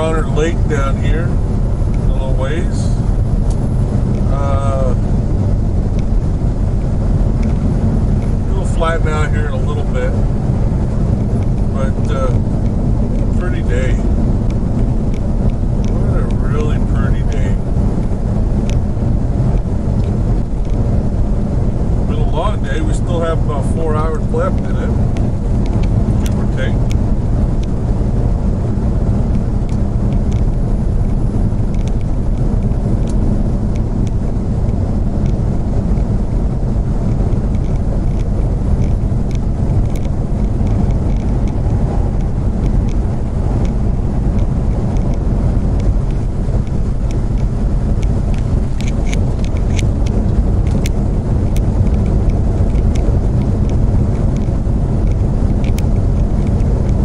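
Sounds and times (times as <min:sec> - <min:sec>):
vehicle road and engine drone: 0:00.0 - 0:57.0
faint ticks: 0:37.1 - 0:57.0.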